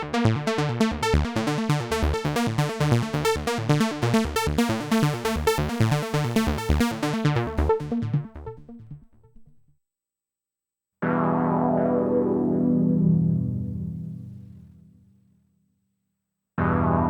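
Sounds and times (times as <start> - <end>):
synthesizer sequenced pattern: 0.0 - 9.1.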